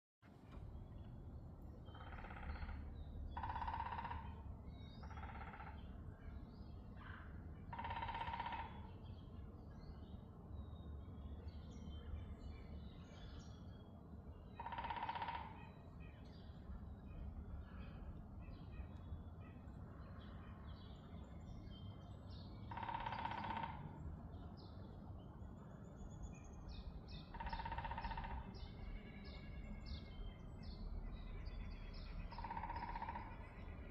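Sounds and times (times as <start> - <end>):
low background rumble: 0.3 - 7.7
woodpecker drumming: 1.9 - 4.4, 5.0 - 5.8, 7.7 - 8.8, 14.6 - 15.6, 22.7 - 23.8, 27.2 - 28.6, 32.3 - 33.5.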